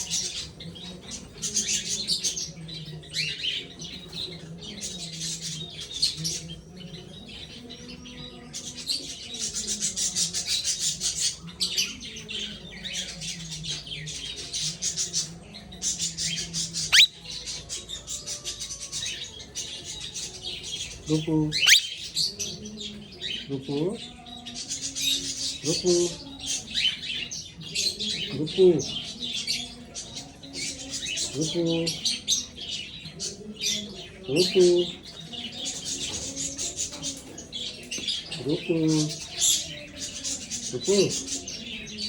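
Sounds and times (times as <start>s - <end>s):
parakeet chattering: 16.8s - 17.3s, 21.5s - 22.1s
sharp parakeet call: 16.9s - 17.2s, 21.6s - 21.9s.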